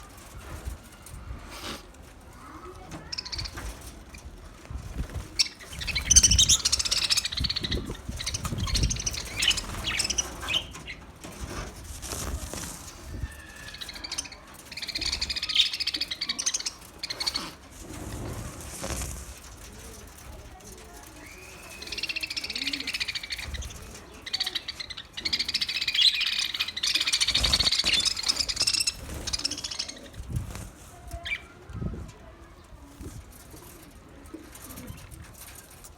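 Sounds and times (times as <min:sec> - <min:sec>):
budgerigars chirping: 0:05.4 - 0:11.0, 0:24.3 - 0:30.0.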